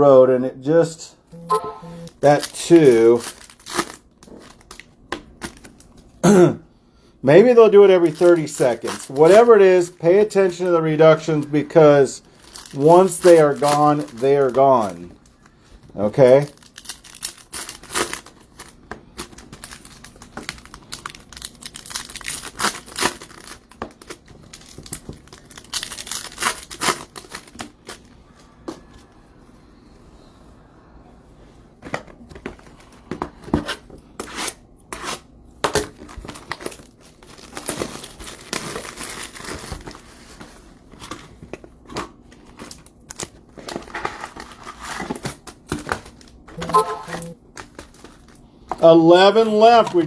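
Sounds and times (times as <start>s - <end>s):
packaging tearing and crinkling: 2.4s - 5.8s, 12.4s - 14.9s, 16.4s - 28.0s, 36.0s - 40.0s.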